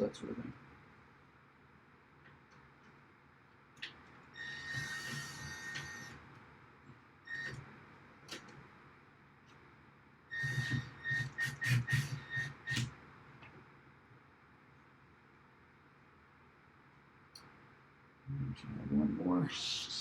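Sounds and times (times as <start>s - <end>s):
cordless drill motor whirring: 4.3s - 6.2s, 10.3s - 12.9s.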